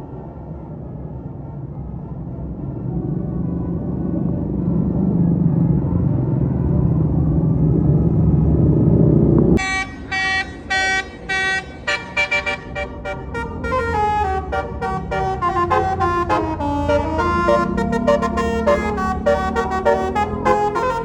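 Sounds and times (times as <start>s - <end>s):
bus musical horn melody: 9.6s - 21.0s.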